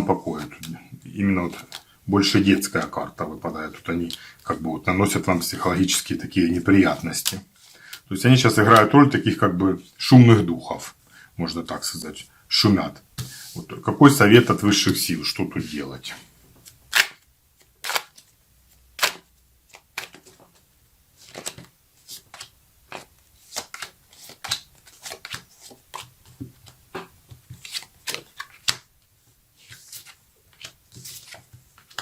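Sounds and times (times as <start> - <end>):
cards being shuffled and dealt: 0.0 - 9.0, 16.6 - 28.9, 29.6 - 32.0.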